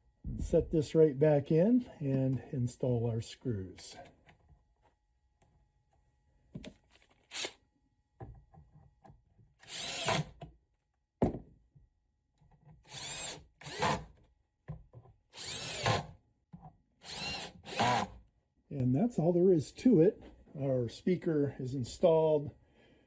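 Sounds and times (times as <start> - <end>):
power drill driving screws: 7.3 - 7.6, 9.6 - 10.4, 12.9 - 14.1, 15.3 - 16.1, 17.0 - 18.2.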